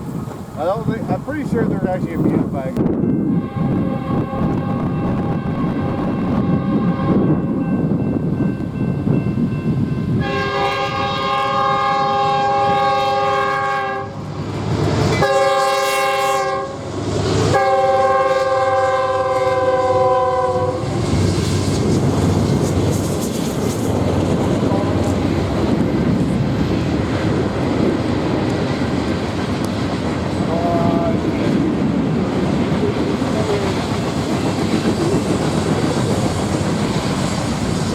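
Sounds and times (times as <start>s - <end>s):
train wheels rumbling on rail: 0.0s - 37.9s
locomotive air horn chord: 3.3s - 7.6s, 10.2s - 14.3s, 15.1s - 16.8s, 17.5s - 21.0s.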